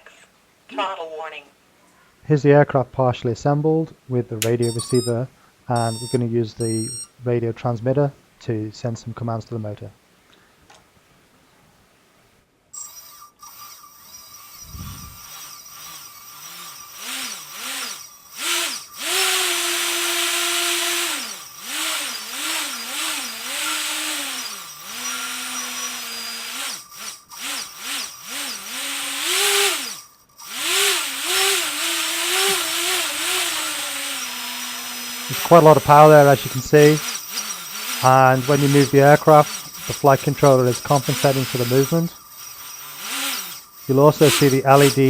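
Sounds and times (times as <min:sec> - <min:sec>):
drone motors whining: 0:05.8 - 0:07.1, 0:12.8 - 0:45.0.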